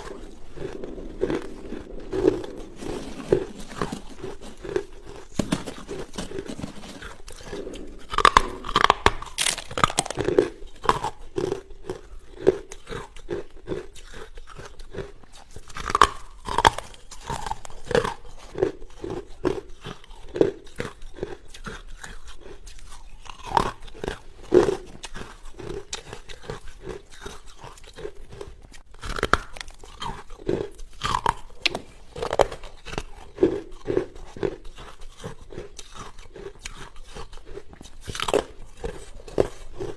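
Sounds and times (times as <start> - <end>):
ice crunching: 0.0 - 13.1
rhythmic chewing: 0.0 - 39.9.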